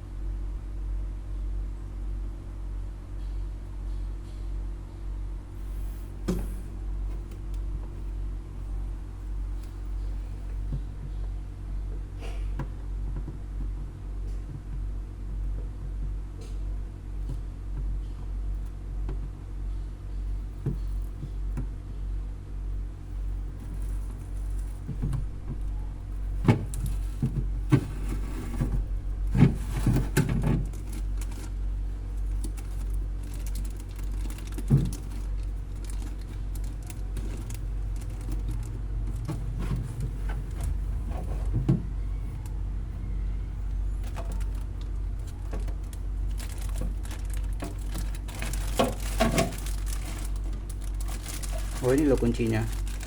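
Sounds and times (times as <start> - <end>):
steady low hum: 0.0 - 53.0
parts knocking and clattering: 43.9 - 53.0.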